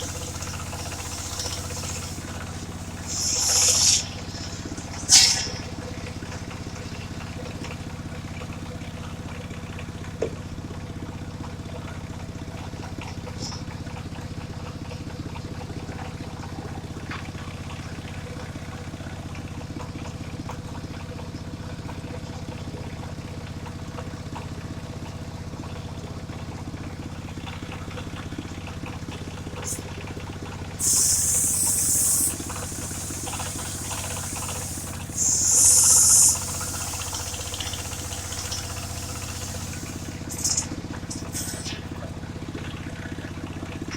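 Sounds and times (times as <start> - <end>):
sawmill engine running: 0.0 - 8.1, 29.0 - 42.0.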